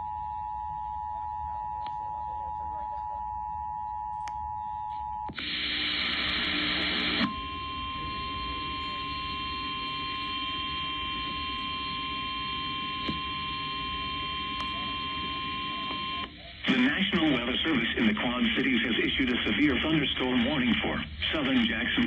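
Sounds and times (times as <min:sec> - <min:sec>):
steady alarm tone: 0:00.0 - 0:16.5
two-tone attention signal: 0:07.2 - 0:16.3.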